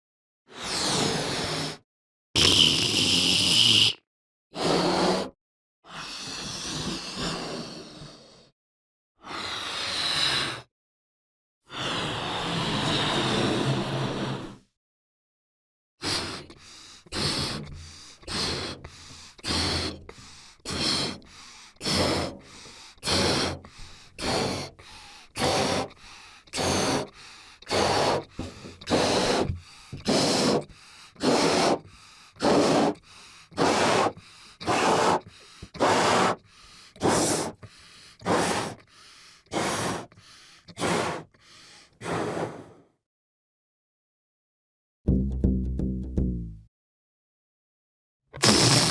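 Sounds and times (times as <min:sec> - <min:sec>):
cartoon balloon inflating puffs: 0:02.4 - 0:04.0, 0:16.0 - 0:37.6, 0:38.2 - 0:40.1, 0:40.8 - 0:41.4, 0:42.0 - 0:42.7, 0:48.4 - 0:48.9.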